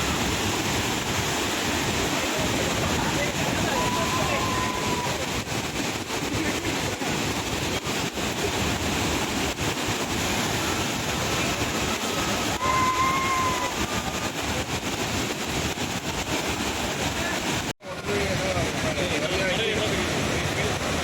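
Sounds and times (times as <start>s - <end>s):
waterfall roaring: 0.0s - 21.0s.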